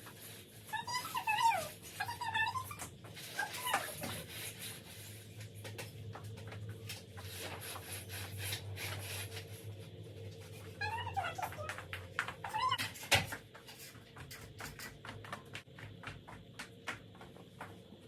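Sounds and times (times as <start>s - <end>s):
pet whining cry: 0.7s - 4.3s.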